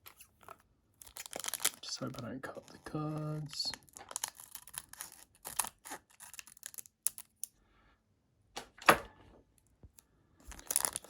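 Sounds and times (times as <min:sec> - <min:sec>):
scissors snipping foil wrapper: 0:00.0 - 0:02.2, 0:03.7 - 0:07.6, 0:10.5 - 0:11.0
foil rustling: 0:10.5 - 0:11.0.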